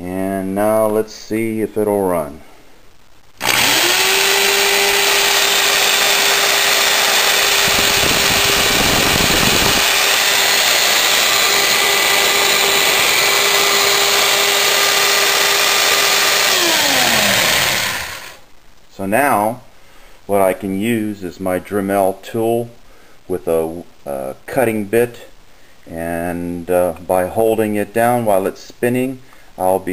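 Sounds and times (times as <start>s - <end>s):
electric drill motor whine: 3.4s - 18.4s.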